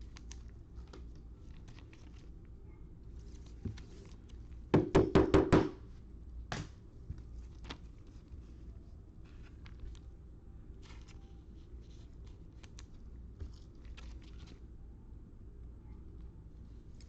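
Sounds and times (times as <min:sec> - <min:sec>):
trading cards clicking and rustling: 0:10.8 - 0:14.6.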